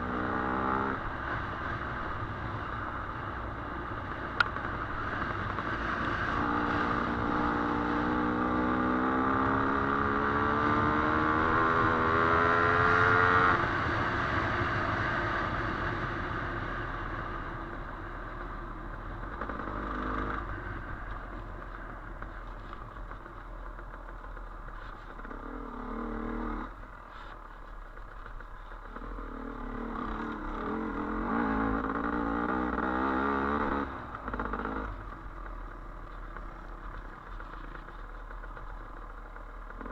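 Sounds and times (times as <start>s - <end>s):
dirt bike engine revving: 28.9s - 35.0s.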